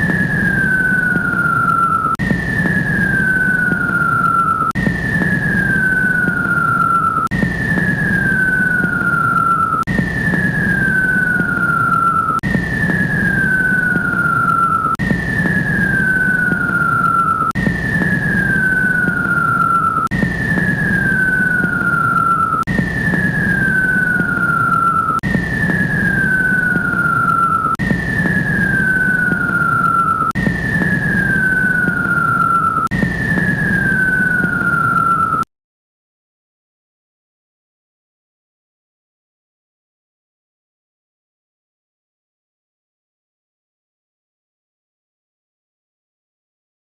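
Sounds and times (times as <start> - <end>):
jet engine rumble: 0.0 - 35.5
jet engine whine falling in pitch: 0.0 - 35.5.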